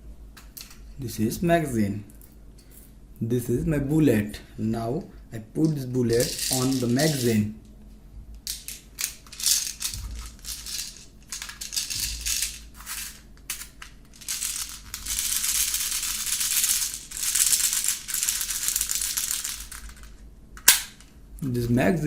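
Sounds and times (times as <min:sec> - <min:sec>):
toy bullets clicking and rattling: 0:06.1 - 0:07.4, 0:08.5 - 0:21.1.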